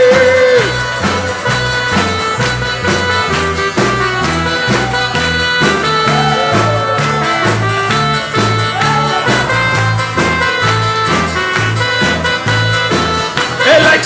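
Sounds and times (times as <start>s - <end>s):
bass line: 0.0s - 14.0s
drum beat: 0.0s - 14.0s
held chords: 0.0s - 14.0s.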